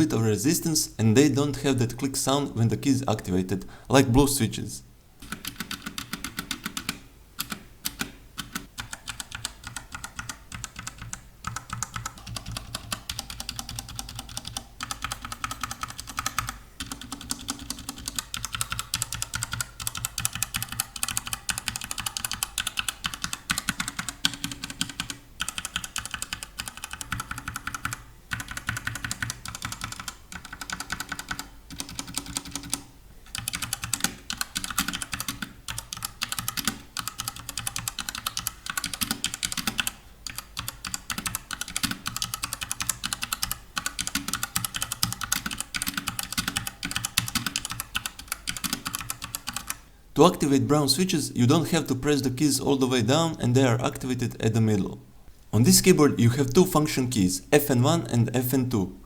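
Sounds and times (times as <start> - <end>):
mechanical keyboard typing: 5.2 - 49.8.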